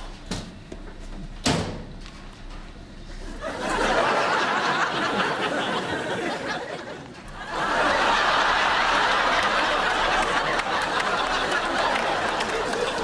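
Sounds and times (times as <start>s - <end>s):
studio audience laughing: 3.3s - 13.0s.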